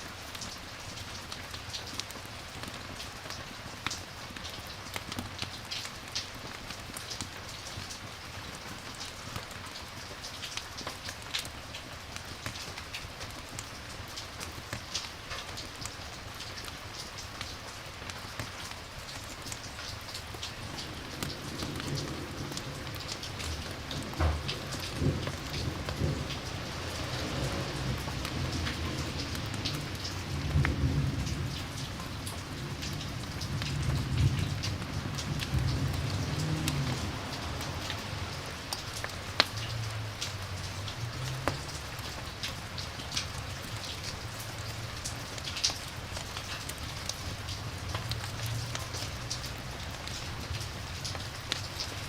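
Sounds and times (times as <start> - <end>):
rain falling: 0.0 - 52.0
thunder rumbling: 20.7 - 38.7.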